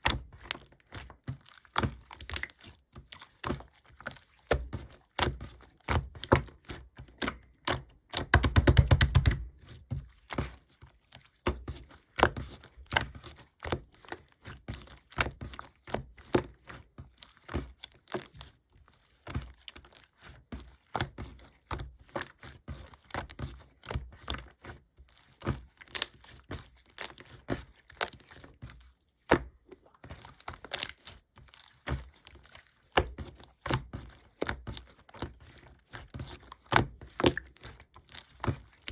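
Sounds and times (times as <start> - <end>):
small clicks and taps: 7.0 - 9.4.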